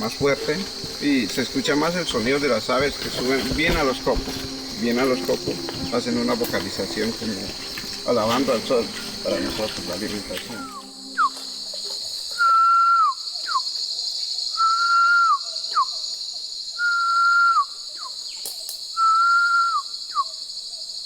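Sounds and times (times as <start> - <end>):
insects droning: 0.0 - 21.0
man whistling bird call: 10.2 - 13.7, 14.5 - 16.0, 16.8 - 18.2, 18.9 - 20.4.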